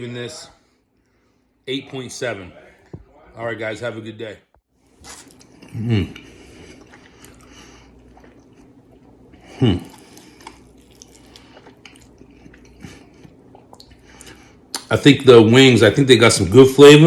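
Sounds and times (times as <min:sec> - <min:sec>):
soft chewing: 0:04.9 - 0:14.9.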